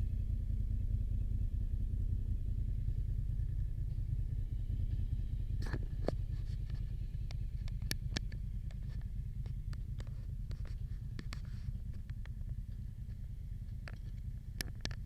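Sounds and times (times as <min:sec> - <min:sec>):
steady low rumble: 0:00.0 - 0:15.0
sharp clicks and ticks: 0:05.7 - 0:15.0.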